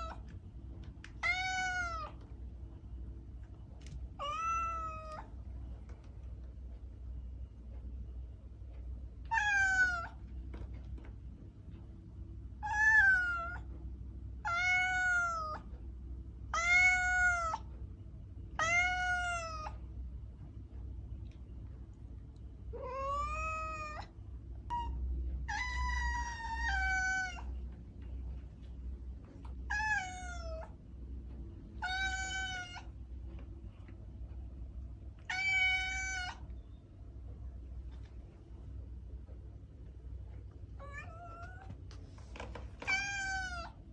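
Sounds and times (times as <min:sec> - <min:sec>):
cat yowling: 0:01.2 - 0:02.2, 0:04.2 - 0:05.3, 0:09.3 - 0:10.2, 0:12.6 - 0:13.7, 0:14.4 - 0:15.6, 0:16.5 - 0:17.7, 0:18.6 - 0:19.8, 0:22.8 - 0:24.1, 0:24.7 - 0:27.6, 0:29.7 - 0:30.8, 0:31.8 - 0:32.9, 0:35.3 - 0:36.4, 0:40.8 - 0:41.7, 0:42.8 - 0:43.8.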